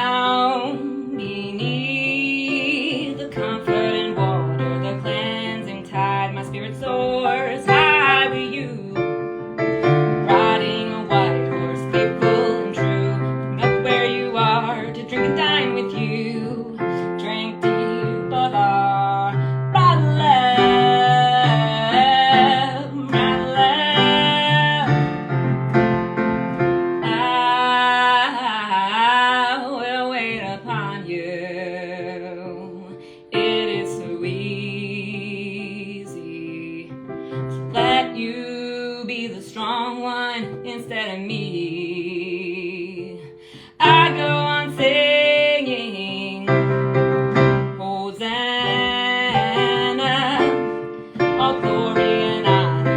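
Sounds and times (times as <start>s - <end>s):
person singing: 0.0s - 25.7s, 27.0s - 52.9s
keyboard chords: 0.7s - 27.7s, 46.4s - 47.8s, 48.6s - 52.9s.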